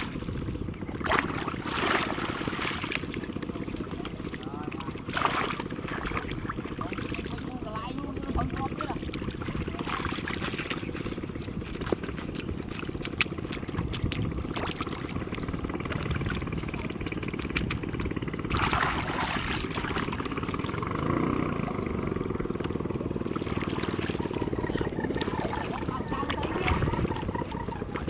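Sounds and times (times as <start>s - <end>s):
small engine running: 0.0s - 28.0s
splash-like noise: 18.5s - 21.0s.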